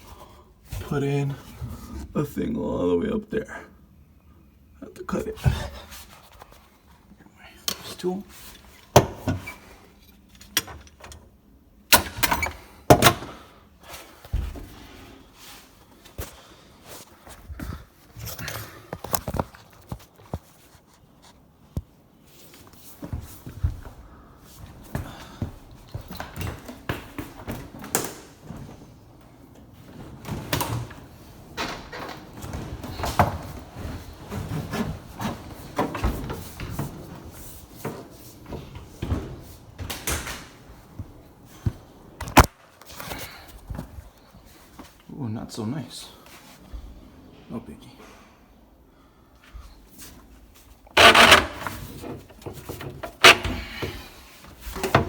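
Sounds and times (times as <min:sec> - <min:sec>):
tools and plumbing parts handled: 0:18.1 - 0:21.4, 0:50.8 - 0:55.0.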